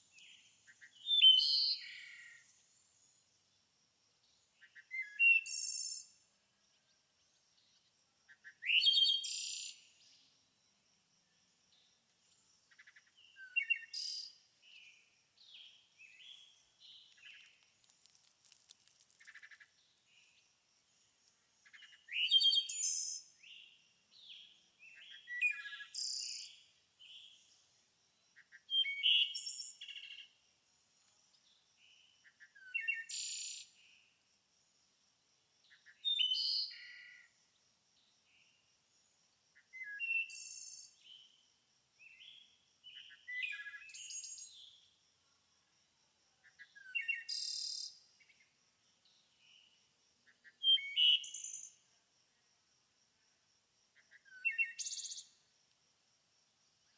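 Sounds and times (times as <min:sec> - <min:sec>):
songbirds singing: 0:00.0 - 0:03.6, 0:04.2 - 0:10.4, 0:11.3 - 0:34.1, 0:42.0 - 0:44.9, 0:46.3 - 0:51.9, 0:54.0 - 0:55.4.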